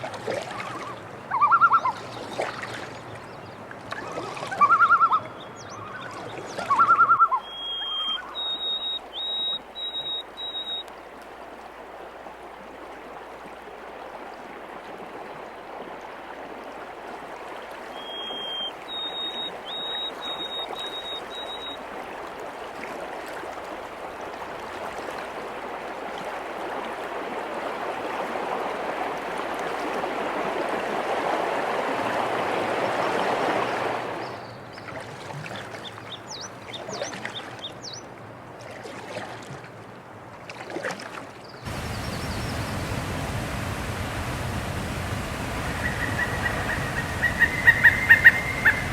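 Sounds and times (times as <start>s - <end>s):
flowing water: 0.0s - 48.9s
bird whistling a short song: 6.7s - 10.9s, 17.9s - 21.8s, 45.8s - 48.9s.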